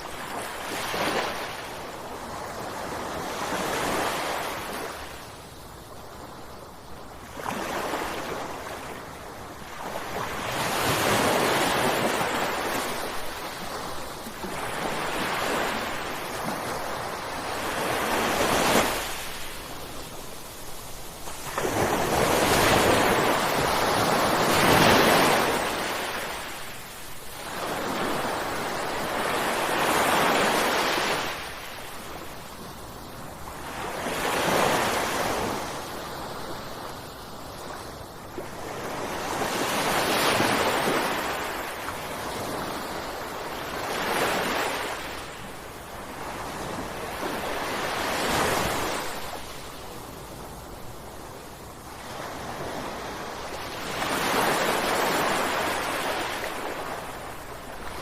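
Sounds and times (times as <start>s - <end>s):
ocean waves crashing: 9.7s - 32.4s, 51.9s - 58.0s.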